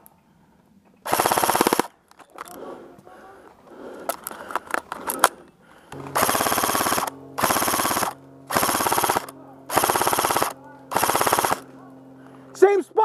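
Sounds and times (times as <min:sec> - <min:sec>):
airsoft gun rapid firing: 0:01.0 - 0:01.9, 0:06.0 - 0:11.7
motor and gearbox buzz: 0:06.0 - 0:11.7.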